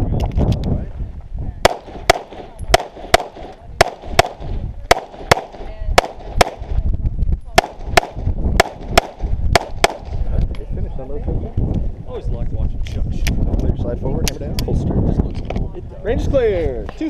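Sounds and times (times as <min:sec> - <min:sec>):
pistol shots: 0:01.6 - 0:06.8, 0:07.6 - 0:10.2.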